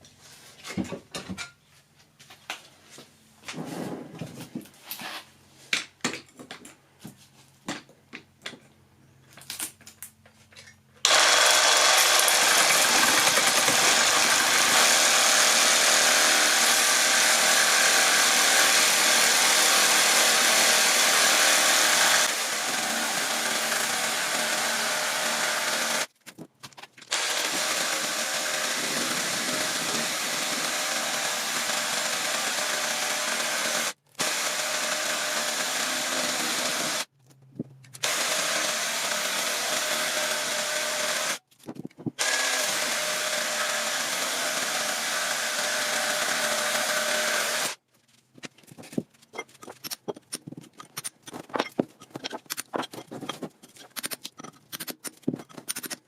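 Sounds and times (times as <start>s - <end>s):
power tool running: 11.0s - 26.1s, 27.1s - 37.1s, 38.0s - 41.4s, 42.2s - 47.8s.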